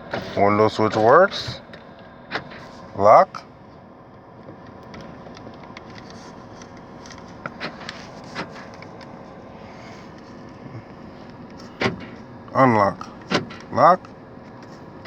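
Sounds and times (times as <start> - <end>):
car interior hum: 0.0 - 15.0.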